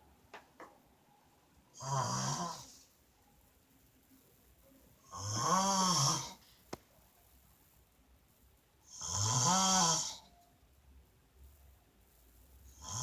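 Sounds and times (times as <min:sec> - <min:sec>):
woman snoring: 0:01.8 - 0:02.8, 0:05.1 - 0:06.4, 0:08.9 - 0:10.3, 0:12.8 - 0:13.0.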